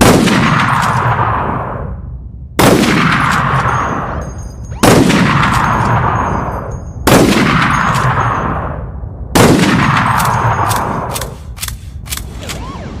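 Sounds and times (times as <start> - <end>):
rifle shots echoing: 0.0 - 1.8, 2.6 - 4.2, 4.8 - 12.8
rifle bolt clicking: 10.2 - 12.3.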